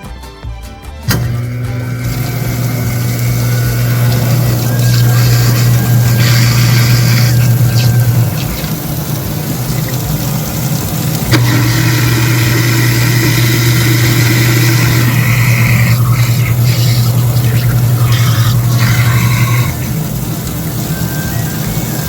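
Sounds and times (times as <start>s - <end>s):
waste disposer motor humming: 1.0s - 22.0s
switch click: 1.1s - 4.1s.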